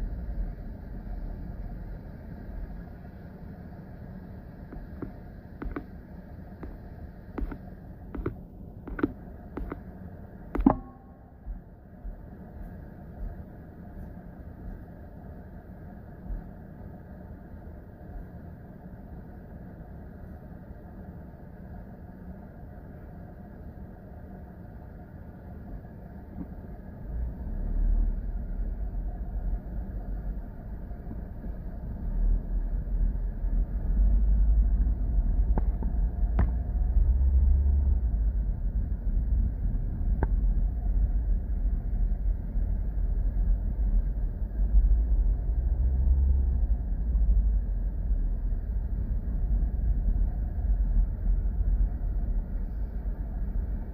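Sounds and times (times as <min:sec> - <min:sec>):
car engine and road rumble: 0:04.4 - 0:11.4, 0:26.2 - 0:53.9.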